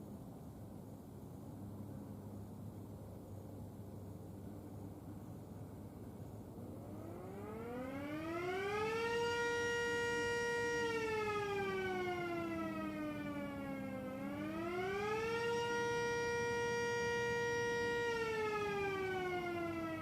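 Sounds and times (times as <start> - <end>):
electromechanical siren wailing: 6.8 - 20.0.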